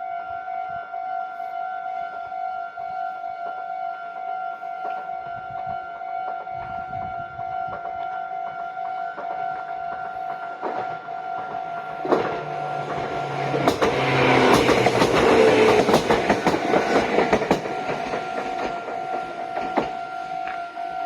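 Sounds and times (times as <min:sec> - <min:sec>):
level-crossing warning bell: 0:00.0 - 0:21.0
train wheels clacking over rail joints: 0:09.2 - 0:20.7.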